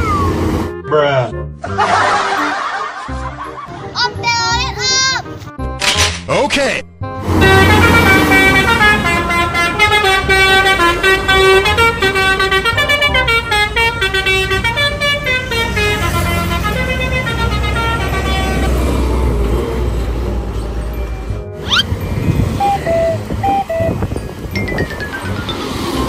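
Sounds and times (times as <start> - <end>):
bus engine rumble: 0.0 - 0.7, 7.1 - 26.0
musical bus horn melody: 7.0 - 19.5, 21.5 - 26.0.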